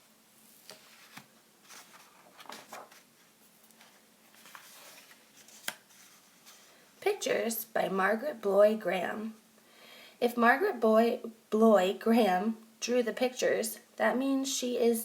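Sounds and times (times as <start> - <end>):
soft rustles: 0.4 - 7.0.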